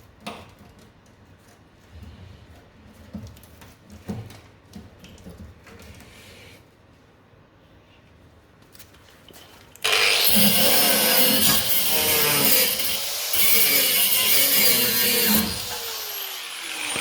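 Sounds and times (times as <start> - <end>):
loud power tool running: 9.8 - 17.0.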